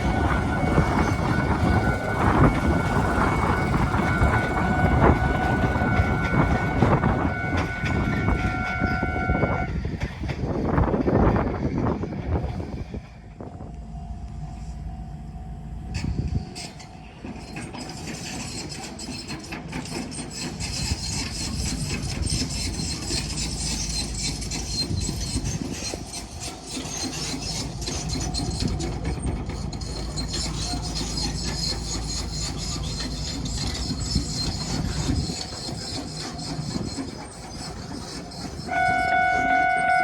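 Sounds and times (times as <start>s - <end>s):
wheels clicking on rails: 0.0s - 14.4s, 15.8s - 40.0s
train wheels rumbling on track: 0.0s - 40.0s.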